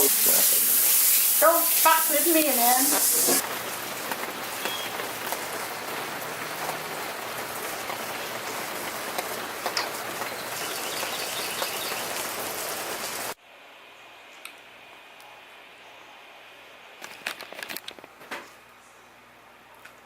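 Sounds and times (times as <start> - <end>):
patter of falling water: 0.0 - 13.4
water drops ticking: 9.8 - 12.5.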